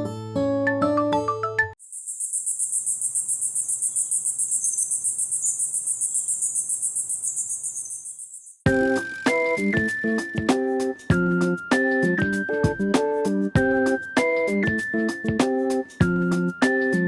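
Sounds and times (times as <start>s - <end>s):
chirping ringtone trill: 8.7s - 17.0s
marimba-like tone: 8.7s - 17.0s.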